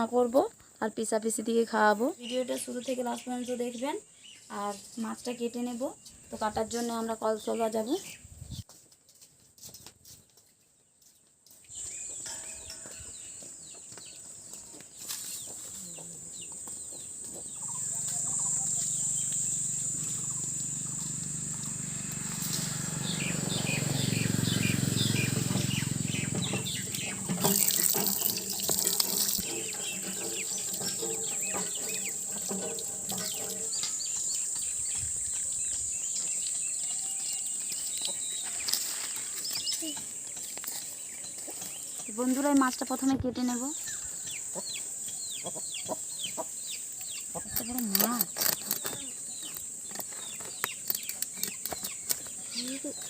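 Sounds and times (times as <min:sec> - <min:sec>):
birds chirping: 0:01.0 - 0:08.3, 0:11.7 - 0:53.0
tap water running into sink: 0:27.0 - 0:33.8.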